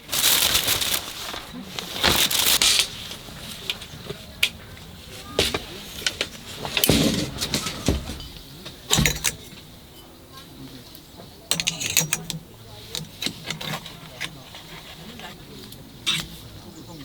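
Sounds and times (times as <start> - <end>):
loud clatters: 0.0 - 10.1
objects knocking and rustling: 0.0 - 10.2, 11.5 - 16.8.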